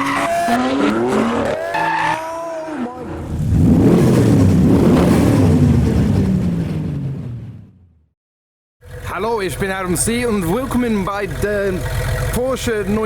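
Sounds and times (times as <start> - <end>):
tyre squeal: 0.0 - 3.1
car engines revving: 0.0 - 7.8, 8.9 - 13.0.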